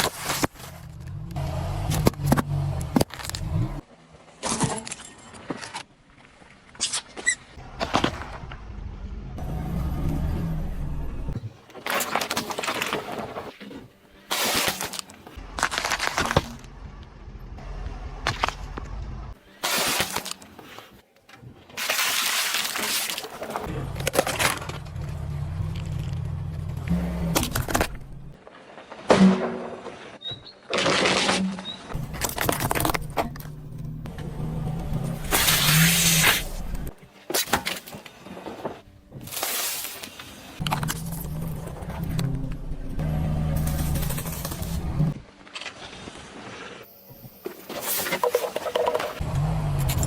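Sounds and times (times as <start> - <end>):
objects cracking under tyres: 0.0 - 3.8, 11.6 - 16.8, 18.2 - 19.0, 19.6 - 42.7
car engine and tyre rumble: 0.0 - 4.2, 7.6 - 11.5, 15.4 - 19.4, 23.6 - 28.4, 31.9 - 37.1, 40.6 - 45.3, 48.9 - 50.0
car engine running: 23.7 - 28.4.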